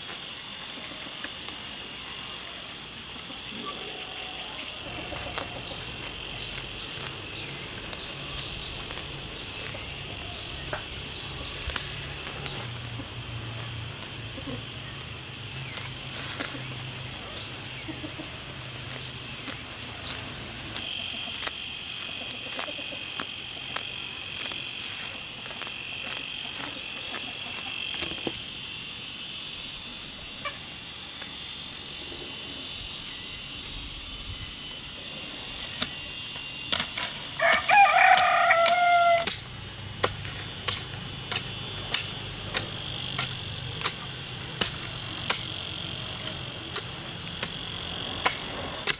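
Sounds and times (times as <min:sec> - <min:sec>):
high insect buzz: 0:00.0 - 0:48.9
rooster crowing: 0:37.4 - 0:39.4.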